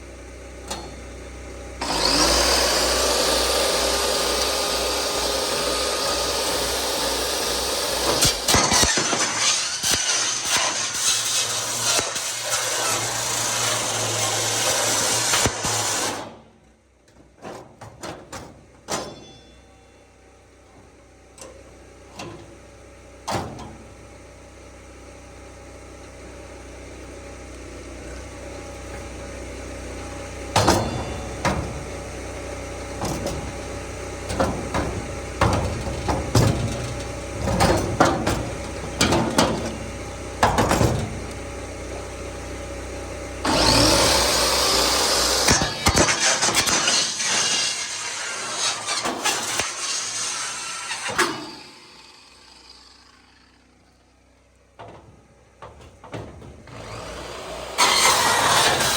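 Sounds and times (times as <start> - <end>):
excavator diesel engine running: 0.0 - 8.9, 19.5 - 47.3, 49.3 - 58.9
metal knocks and clanks: 17.0 - 19.8, 30.6 - 32.0, 33.0 - 41.3, 54.7 - 58.9.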